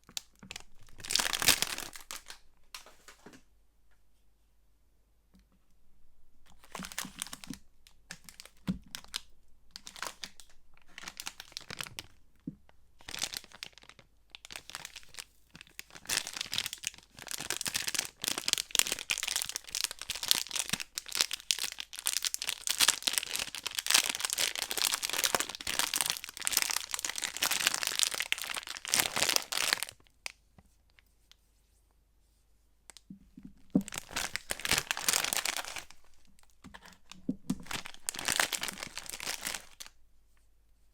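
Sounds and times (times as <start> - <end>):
wrappers crinkling and tearing: 0.0 - 2.9, 6.5 - 12.2, 13.0 - 30.1, 33.6 - 40.0.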